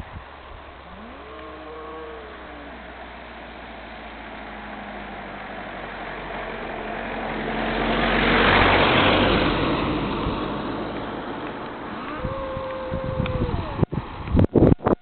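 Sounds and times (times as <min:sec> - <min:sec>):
motor vehicle passing by: 0:00.0 - 0:14.3.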